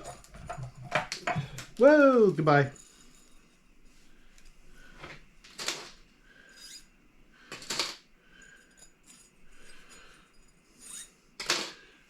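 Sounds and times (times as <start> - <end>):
light scrapes and rustles: 0.0 - 1.8.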